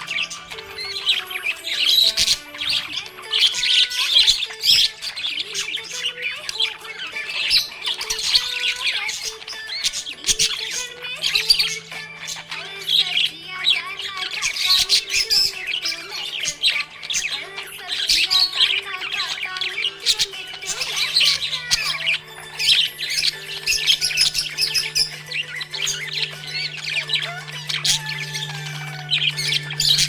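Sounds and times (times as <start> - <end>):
budgerigars chirping and squawking: 0.0 - 30.0
steady low hum: 23.5 - 30.0.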